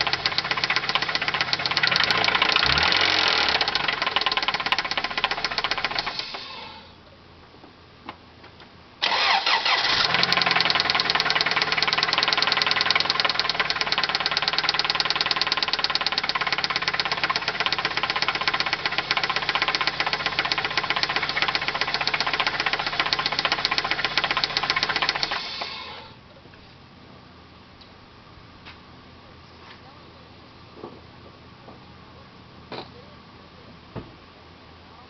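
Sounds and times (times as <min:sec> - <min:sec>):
engine running with steady knock: 0:00.0 - 0:06.6, 0:09.9 - 0:25.9
car engine starting: 0:00.0 - 0:06.8, 0:09.0 - 0:26.2.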